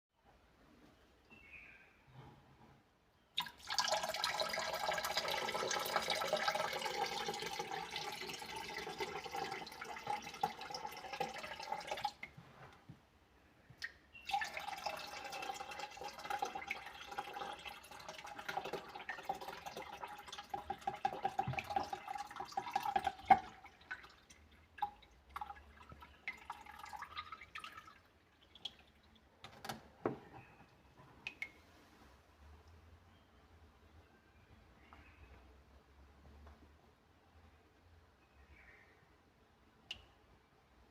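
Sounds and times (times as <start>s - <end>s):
water pouring into a drain: 3.4s - 12.3s, 14.2s - 29.3s
water drips and splashes: 3.4s - 12.4s, 13.8s - 29.4s.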